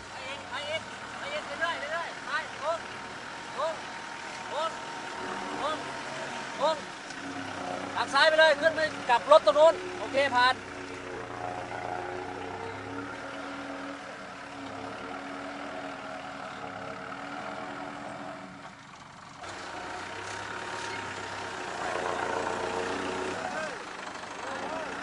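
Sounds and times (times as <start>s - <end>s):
off-road vehicle engine running: 0.0s - 25.0s.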